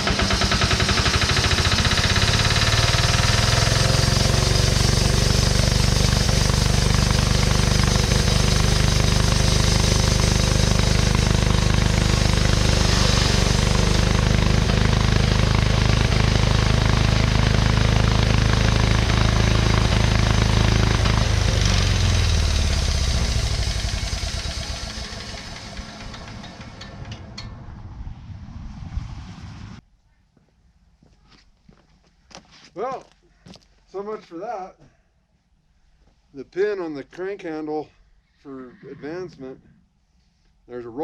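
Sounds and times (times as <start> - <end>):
sawmill engine running: 0.0 - 28.0.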